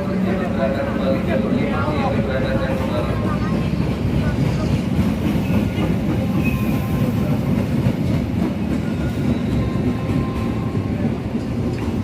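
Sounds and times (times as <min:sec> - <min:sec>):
train wheels on rails: 0:00.0 - 0:12.0.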